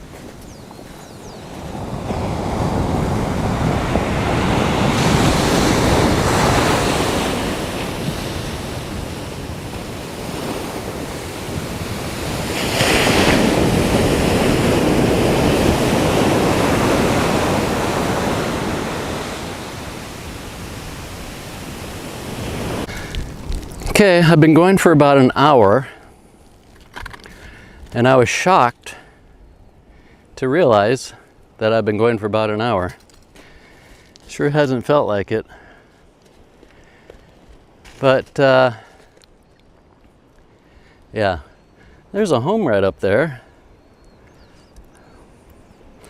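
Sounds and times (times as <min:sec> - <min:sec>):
ocean waves crashing: 0:00.0 - 0:26.4, 0:37.7 - 0:39.1, 0:40.6 - 0:43.8.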